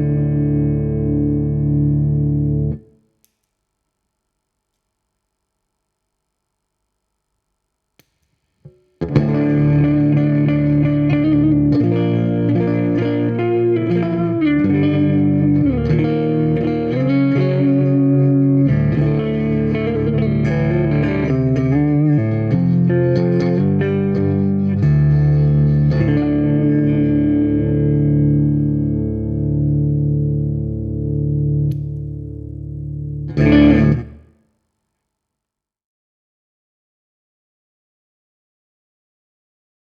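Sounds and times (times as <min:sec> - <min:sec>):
electric guitar chords and notes: 0:00.0 - 0:03.0, 0:09.0 - 0:34.3
faint clicks: 0:03.2 - 0:03.7.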